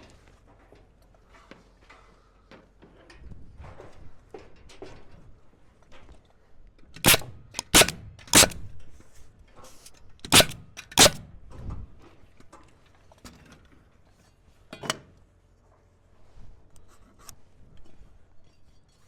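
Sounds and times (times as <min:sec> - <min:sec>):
hammer driving nails into wood: 0:07.0 - 0:08.7, 0:10.2 - 0:11.3.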